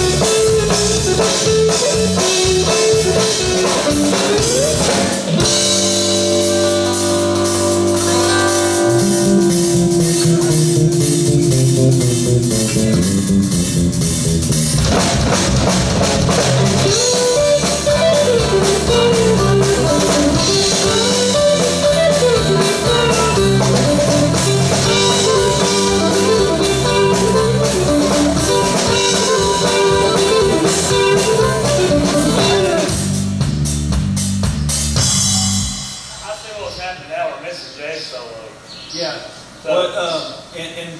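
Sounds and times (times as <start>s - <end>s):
guitar solo: 0.0s - 14.9s, 16.0s - 33.0s
bass guitar: 0.0s - 36.0s
drum kit beat: 0.0s - 36.7s.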